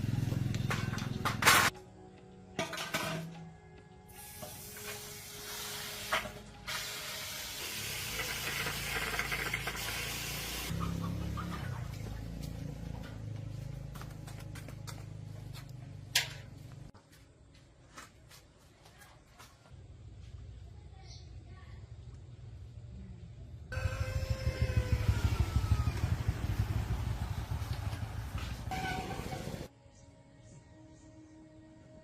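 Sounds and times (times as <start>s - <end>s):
spray hissing: 4.1s - 8.9s, 9.6s - 10.7s
low hum: 22.0s - 29.7s.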